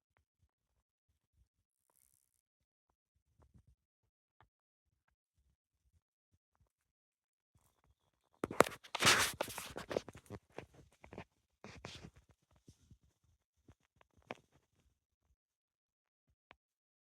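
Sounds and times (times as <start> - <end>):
close rustling and crackling: 8.4 - 12.3.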